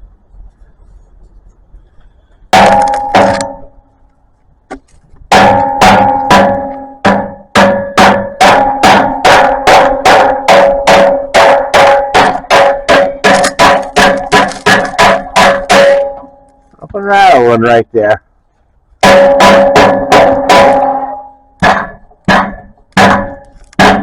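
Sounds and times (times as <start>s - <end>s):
metallic clangs from struck exhaust: 5.3s - 16.5s, 19.0s - 24.0s.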